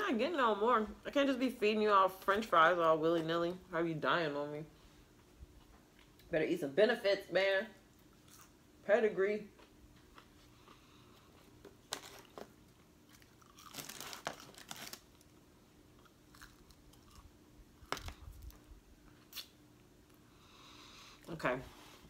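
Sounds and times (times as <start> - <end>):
crunching crisp fries: 11.4 - 19.5.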